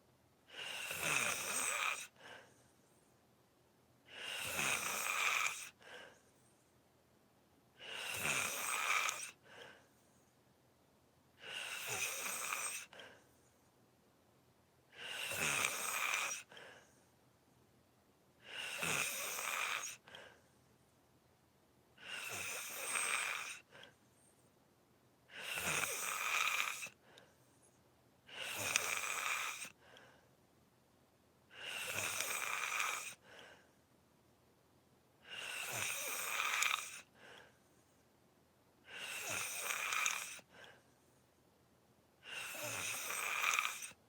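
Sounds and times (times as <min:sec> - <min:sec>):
person snoring: 0:00.5 - 0:02.2, 0:04.1 - 0:05.8, 0:07.8 - 0:09.4, 0:11.4 - 0:12.9, 0:15.0 - 0:16.6, 0:18.5 - 0:20.1, 0:22.0 - 0:23.8, 0:25.4 - 0:27.0, 0:28.3 - 0:29.8, 0:31.5 - 0:33.3, 0:35.3 - 0:37.1, 0:38.9 - 0:40.5, 0:42.3 - 0:44.0
faint breath sound: 0:02.0 - 0:03.3, 0:05.6 - 0:06.8, 0:09.2 - 0:10.5, 0:12.8 - 0:13.8, 0:16.4 - 0:17.2, 0:20.0 - 0:20.9, 0:26.8 - 0:28.8, 0:29.5 - 0:30.4, 0:33.1 - 0:33.9, 0:36.9 - 0:38.1, 0:40.3 - 0:41.4.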